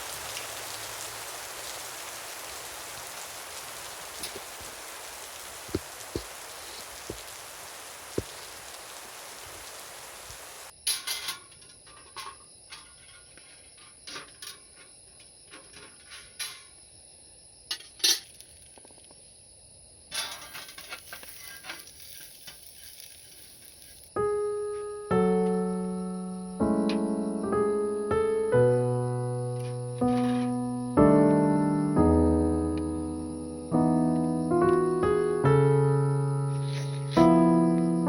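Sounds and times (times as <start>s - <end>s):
steady rain: 0.0s - 10.7s, 29.6s - 30.4s, 36.5s - 37.4s
drips tapping: 3.9s - 10.6s
piano music: 24.2s - 38.0s.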